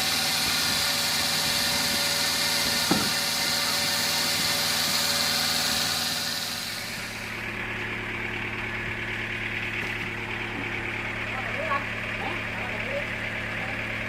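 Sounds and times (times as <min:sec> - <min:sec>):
band saw cutting with high hiss: 0:00.0 - 0:07.3
motor low hum: 0:00.0 - 0:14.0.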